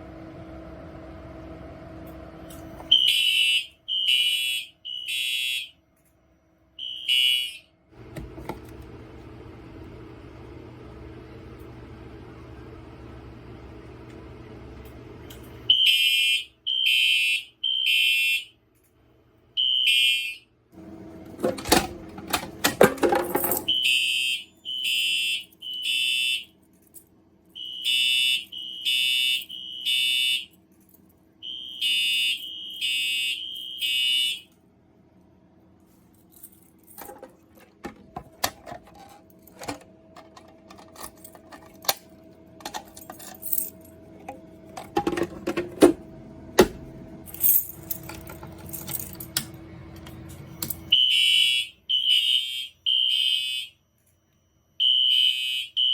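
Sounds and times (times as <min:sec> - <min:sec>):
fire alarm horn beeping: 0:02.7 - 0:05.9, 0:06.7 - 0:07.9, 0:15.7 - 0:18.6, 0:19.5 - 0:20.9, 0:23.4 - 0:26.6, 0:27.5 - 0:30.6, 0:31.4 - 0:34.6, 0:50.0 - 0:55.9
clicks and rattles: 0:36.4 - 0:46.0.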